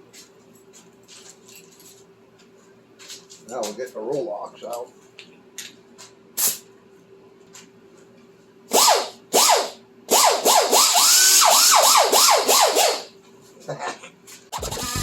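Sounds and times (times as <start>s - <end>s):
air tool bursts: 6.4s - 6.6s, 8.7s - 13.1s, 14.5s - 15.0s
exhaust air hiss: 6.4s - 6.6s.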